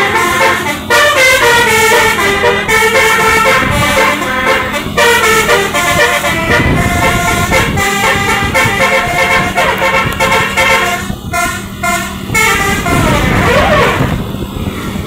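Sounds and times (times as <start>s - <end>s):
bus engine running: 0.0s - 15.0s
multi-tone musical bus horn: 0.0s - 15.0s.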